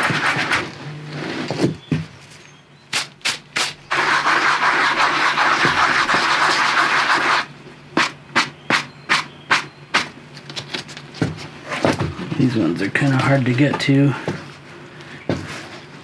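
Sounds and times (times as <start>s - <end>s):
sanding block rubbing leather: 3.9s - 8.5s.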